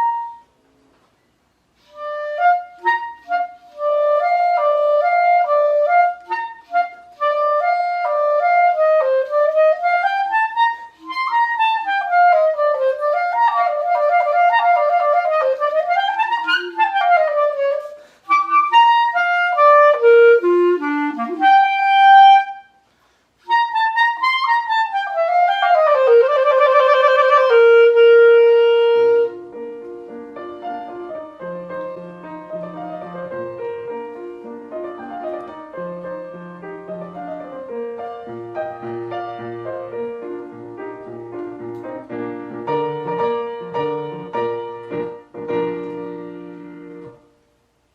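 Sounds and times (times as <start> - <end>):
clarinet playing fast runs: 1.8 - 22.8, 23.4 - 29.7
piano playing low chords: 24.5 - 47.4.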